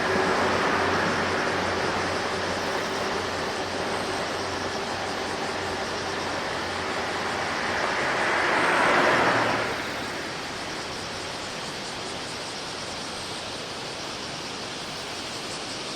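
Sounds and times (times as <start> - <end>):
vehicle passing: 0.0 - 10.6
outdoor hiss: 0.0 - 15.9.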